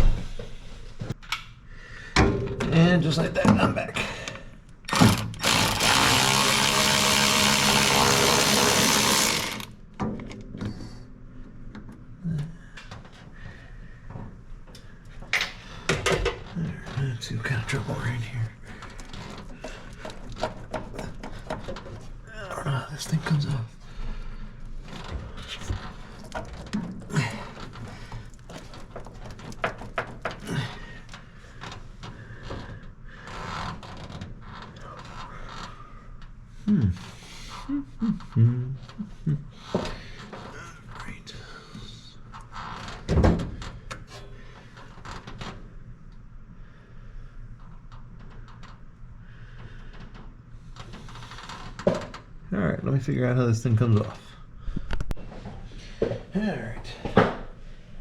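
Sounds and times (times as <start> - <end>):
electric power tool running: 4.9 - 9.8
tools clicking and knocking: 25.8 - 30.5.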